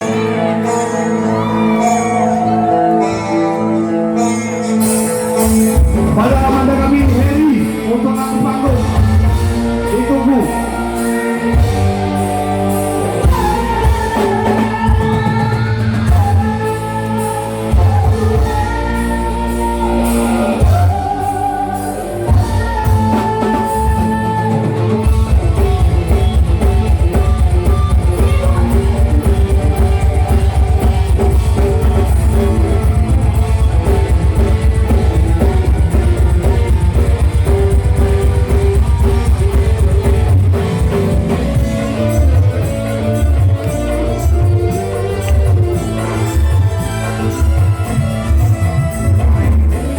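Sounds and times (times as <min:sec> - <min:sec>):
live band music with drums: 0:00.0 - 0:49.9
person singing: 0:00.0 - 0:49.9
bass-heavy beat: 0:25.0 - 0:49.9.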